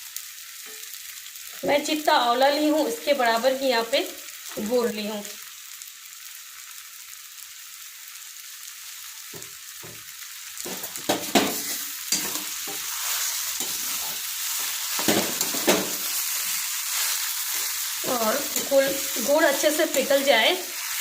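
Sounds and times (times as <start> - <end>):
food sizzling in a pan: 0.0 - 21.0
spatula scraping pan: 10.7 - 21.0.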